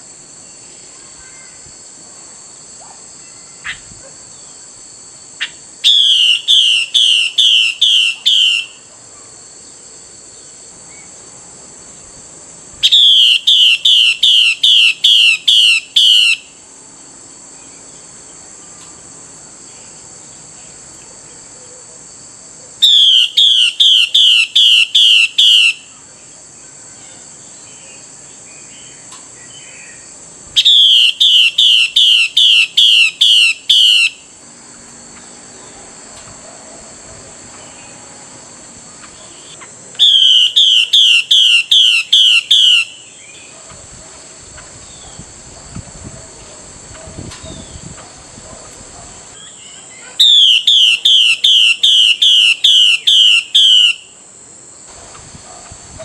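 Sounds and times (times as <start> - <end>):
bird giving harsh rapid calls: 39.3 - 43.1.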